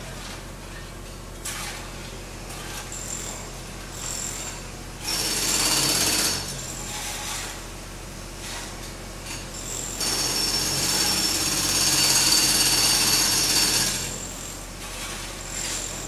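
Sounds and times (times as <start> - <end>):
jackhammer hammering: 5.0 - 6.6, 10.0 - 14.2.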